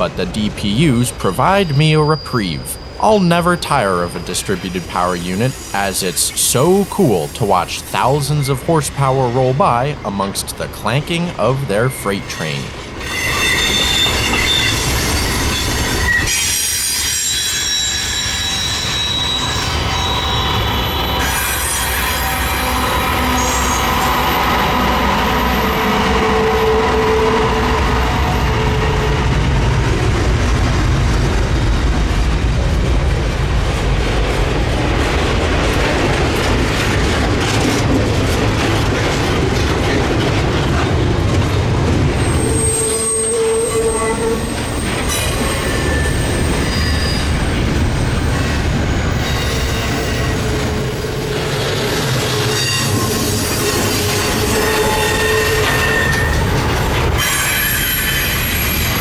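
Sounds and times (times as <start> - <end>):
freight train rumbling on rails: 0.0 - 59.0
high-pitched wheel squeal: 13.0 - 29.3, 42.2 - 48.0, 49.3 - 59.0.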